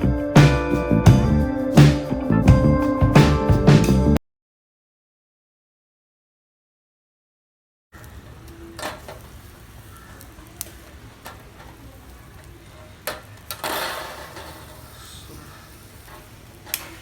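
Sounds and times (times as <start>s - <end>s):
chicken sizzling on a grill: 9.0s - 12.6s, 14.2s - 17.0s.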